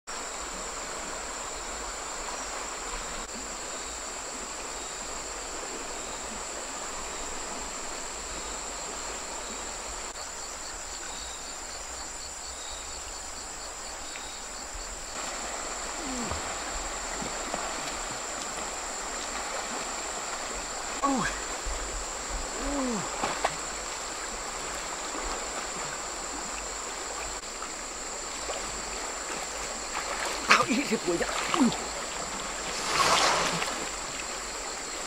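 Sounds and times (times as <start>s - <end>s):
insect chirping fast pulse: 0.1s - 35.0s
insects buzzing drone: 0.1s - 35.0s
steady rushing hiss: 11.6s - 31.2s.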